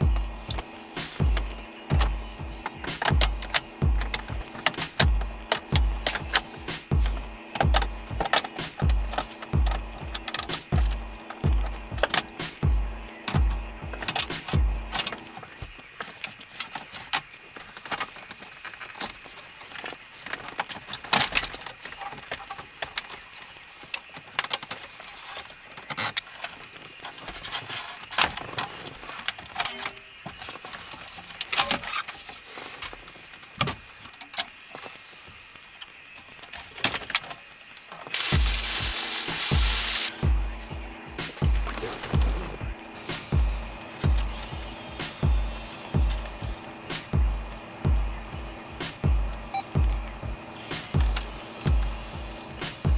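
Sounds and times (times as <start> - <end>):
small parts clicking and rattling: 38.1 - 40.2.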